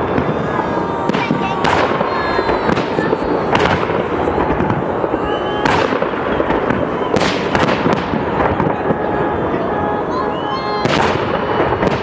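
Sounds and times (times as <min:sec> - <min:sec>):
firework shell bursts: 0:00.0 - 0:09.0
firework crackling: 0:00.0 - 0:12.0.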